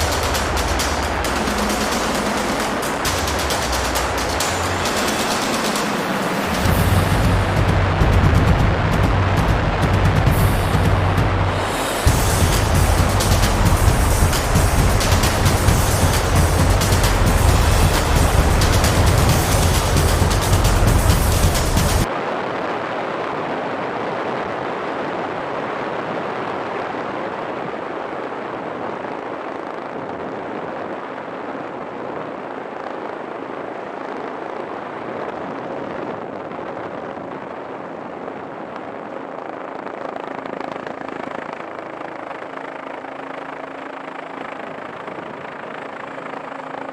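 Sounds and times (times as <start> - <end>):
helicopter drone: 0.0 - 22.1, 37.2 - 46.9
faint steady hum: 0.0 - 23.6.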